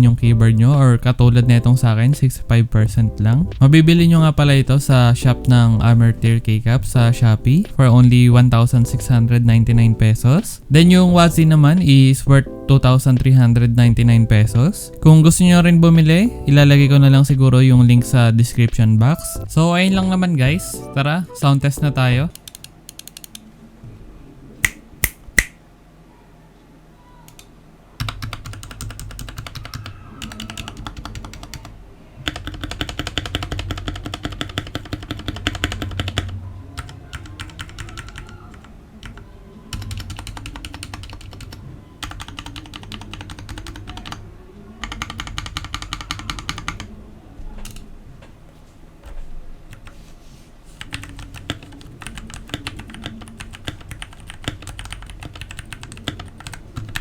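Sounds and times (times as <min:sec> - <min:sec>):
mechanical keyboard typing: 0:21.9 - 0:23.4, 0:28.0 - 0:44.2, 0:44.8 - 0:46.9, 0:50.8 - 0:57.0
sharp single clicks: 0:24.6 - 0:25.6.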